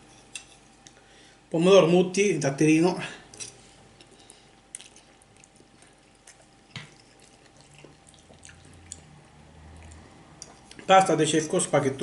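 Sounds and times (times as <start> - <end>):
wet chewing mouth sounds: 4.0 - 10.9.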